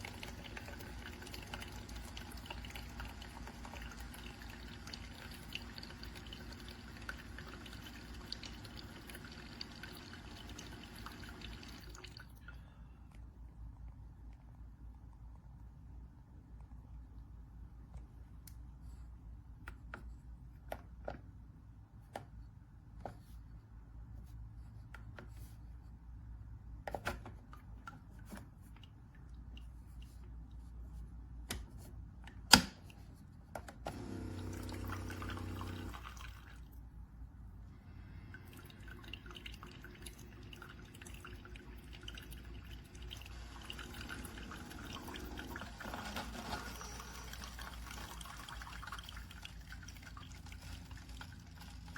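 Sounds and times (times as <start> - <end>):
pump hum: 0.0 - 12.8, 33.9 - 36.8, 37.6 - 51.9.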